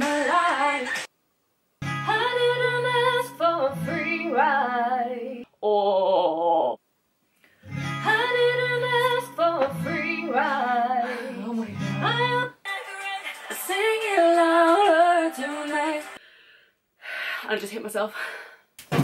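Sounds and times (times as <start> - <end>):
woman singing: 0.0 - 1.1, 2.0 - 6.8, 7.9 - 16.2.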